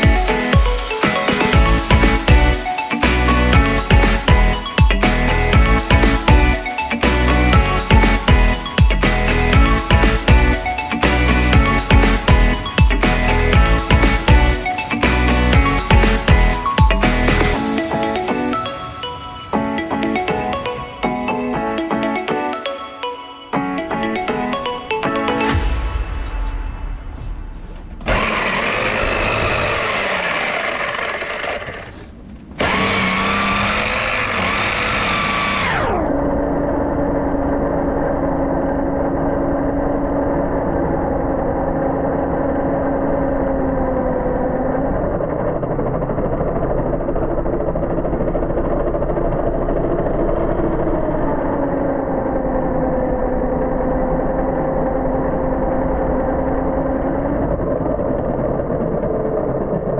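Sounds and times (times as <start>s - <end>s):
engine running steadily: 27.6s - 59.9s.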